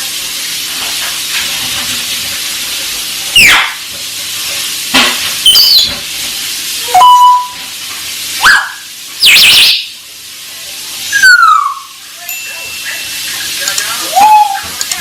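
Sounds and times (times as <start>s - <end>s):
parrot whistling and squawking: 3.3s - 3.8s, 5.4s - 6.0s, 6.8s - 7.6s, 8.4s - 10.0s, 11.1s - 12.0s, 12.8s - 14.8s
beep-like tone: 6.9s - 7.6s.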